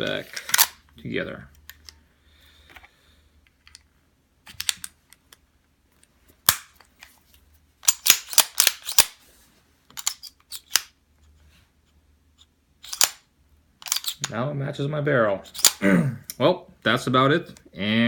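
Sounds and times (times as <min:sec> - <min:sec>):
metallic clicks of pistol parts: 0:00.4 - 0:00.8, 0:07.8 - 0:09.2, 0:09.9 - 0:11.0, 0:12.8 - 0:13.2, 0:13.8 - 0:14.4, 0:15.5 - 0:16.4.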